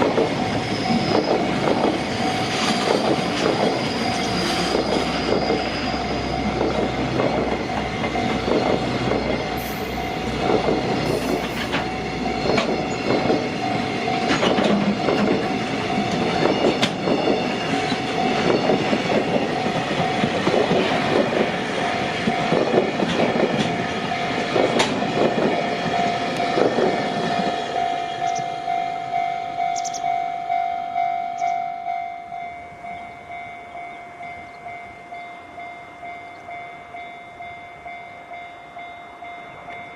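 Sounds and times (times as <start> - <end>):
train wheels clattering over rail joints: 0.0 - 27.8
level crossing warning bell: 0.0 - 39.9.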